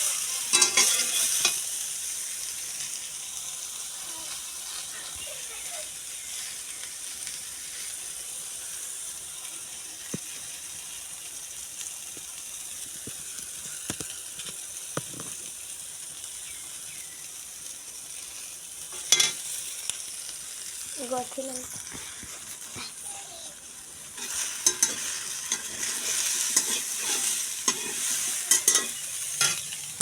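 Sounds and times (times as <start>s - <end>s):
curry sizzling in a pan: 0.0s - 30.0s
spoon clicking against pan: 24.2s - 25.8s, 26.6s - 29.7s.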